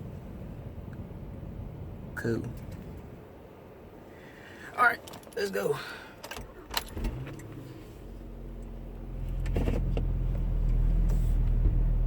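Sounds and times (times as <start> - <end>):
car engine running from inside: 6.4 - 12.0.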